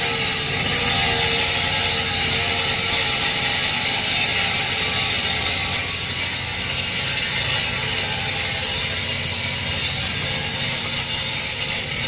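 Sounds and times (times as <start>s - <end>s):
welding arc crackling and hissing: 0.0s - 12.0s.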